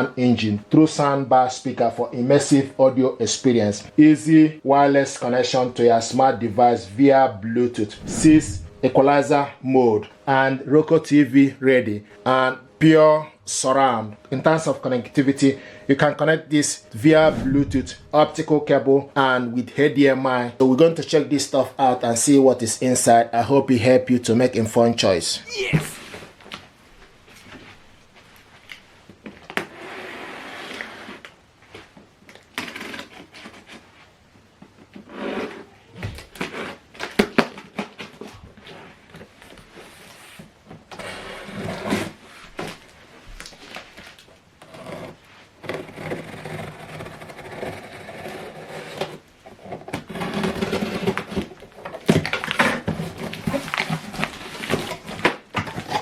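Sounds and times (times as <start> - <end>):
cardboard box rustling and scraping: 49.6 - 56.0.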